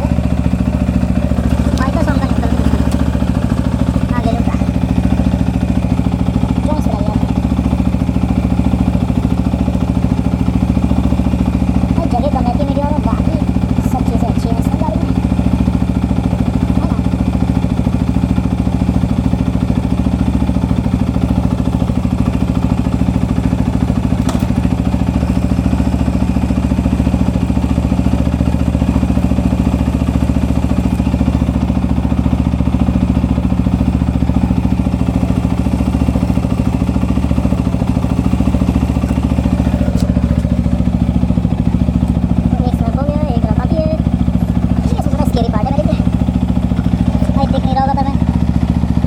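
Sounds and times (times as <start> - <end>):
motorcycle engine idling: 0.0 - 49.0.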